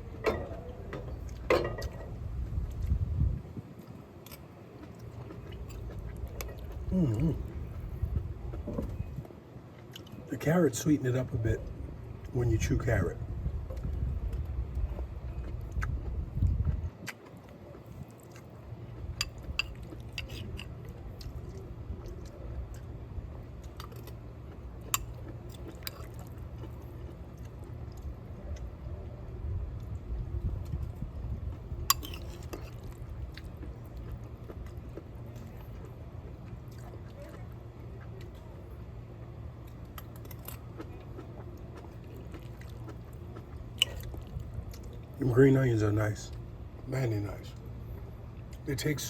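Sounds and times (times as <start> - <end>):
low steady hum: 0.0 - 49.0
person chewing food: 3.7 - 10.3, 13.7 - 28.8, 29.8 - 38.6, 39.5 - 45.2.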